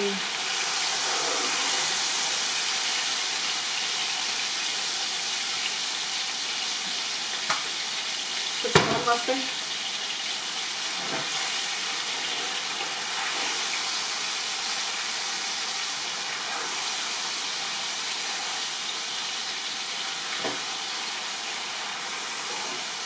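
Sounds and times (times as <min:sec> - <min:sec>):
chicken sizzling in hot oil: 0:00.0 - 0:23.0
light knock on pan: 0:08.7 - 0:09.1.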